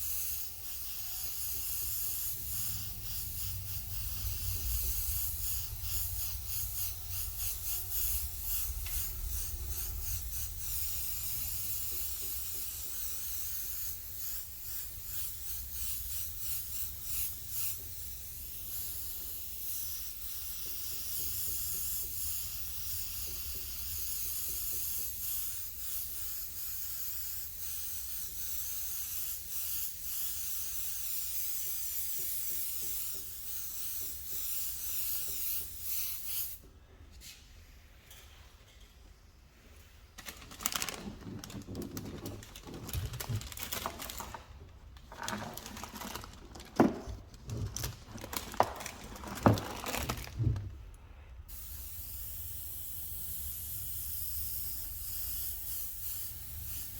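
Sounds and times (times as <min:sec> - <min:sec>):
paint sprayer hissing in pulses: 0:00.0 - 0:36.6, 0:51.5 - 0:56.9
steady low hum: 0:00.4 - 0:12.6.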